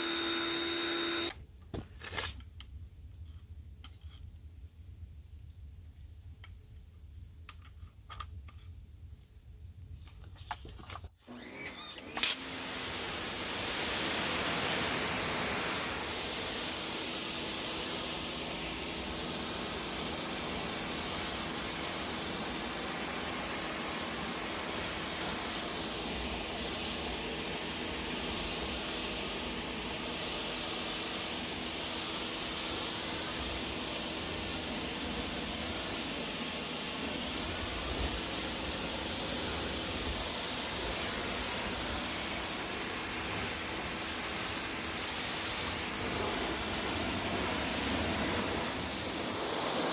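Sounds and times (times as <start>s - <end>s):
pressure washer water jet hiss: 0.0s - 1.3s, 12.0s - 49.9s.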